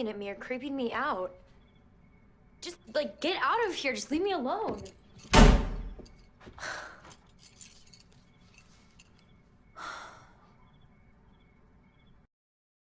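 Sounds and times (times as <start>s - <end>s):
loud thump: 5.3s - 6.0s
breathy sighs: 9.8s - 10.6s.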